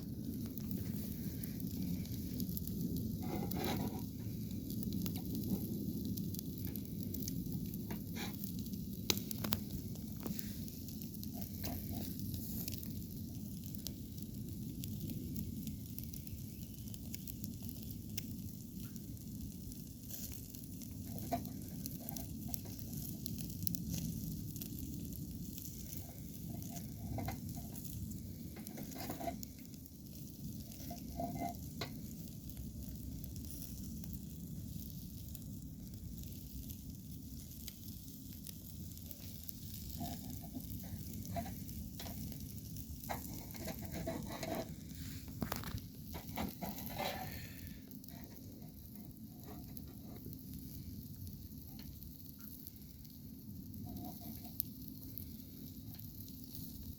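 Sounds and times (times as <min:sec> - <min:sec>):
chicken sizzling: 0:00.0 - 0:56.9.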